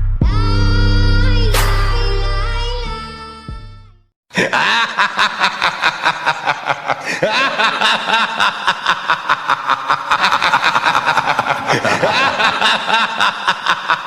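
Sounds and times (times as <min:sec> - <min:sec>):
maniacal laughter ringtone: 0:04.4 - 0:14.0.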